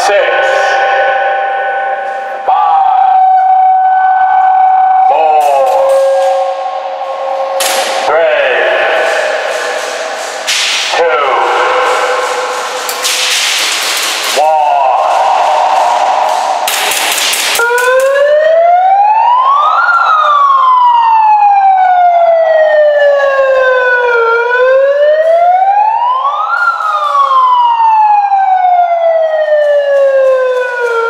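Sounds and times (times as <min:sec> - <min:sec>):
siren wailing: 0:00.0 - 0:13.5, 0:14.2 - 0:31.0
burst of noise: 0:05.8 - 0:17.8.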